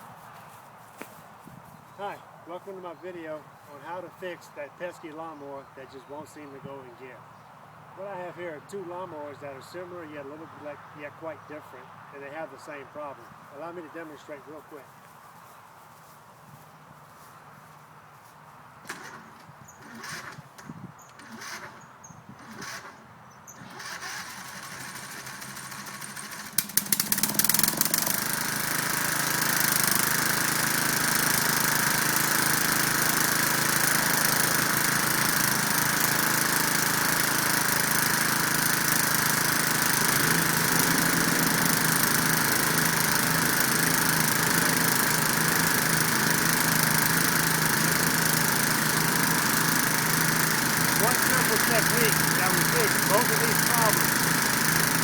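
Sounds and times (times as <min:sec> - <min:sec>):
lawn mower engine running: 0:18.8 - 0:55.0.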